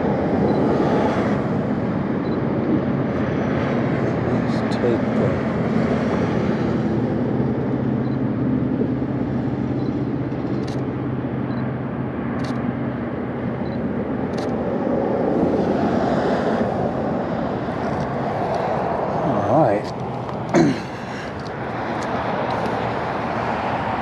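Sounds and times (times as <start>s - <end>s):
engine drone: 0.0s - 24.0s
outdoor noise: 0.0s - 24.0s
sharp clicks: 10.4s - 10.9s, 12.4s - 12.6s, 14.3s - 14.6s, 21.4s - 22.8s.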